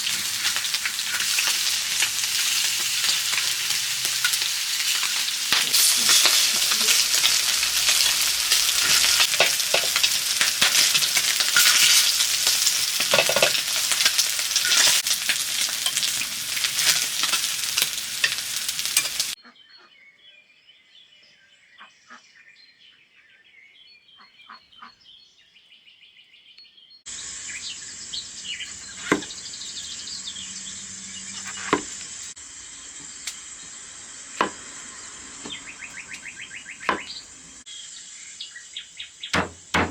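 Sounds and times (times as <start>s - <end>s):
food sizzling in a pan: 0.0s - 19.4s, 27.1s - 38.8s, 39.4s - 39.9s
birdsong: 0.0s - 39.9s
sharp knocks: 39.4s - 39.9s.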